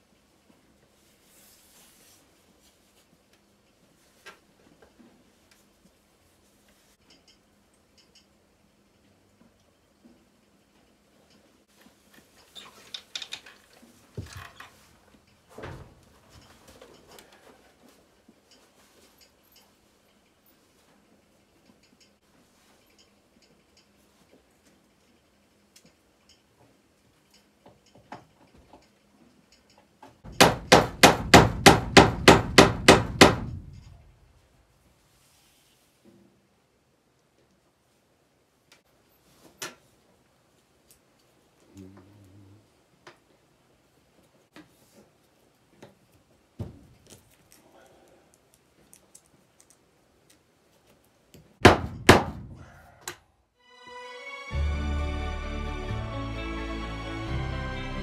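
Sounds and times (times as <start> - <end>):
hammer driving a nail: 30.3 - 33.9, 51.6 - 52.8
heavy thunks: 30.3 - 34.1, 51.6 - 52.8
background music: 53.6 - 58.0.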